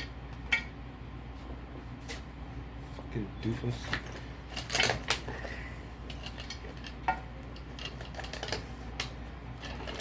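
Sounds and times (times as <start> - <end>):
blade clicking and scraping: 6.0 - 10.0.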